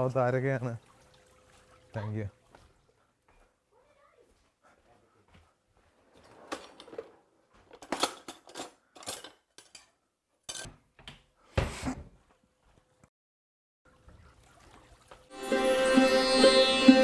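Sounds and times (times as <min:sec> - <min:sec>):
dishes and utensils clinking: 0:07.7 - 0:10.7.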